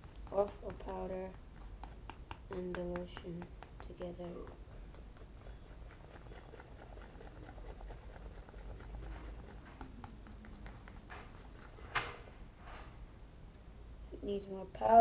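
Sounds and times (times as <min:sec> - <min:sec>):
tool stirring thick mix in bowl: 0:00.0 - 0:11.9
faint clicks and scrapes: 0:00.0 - 0:13.0.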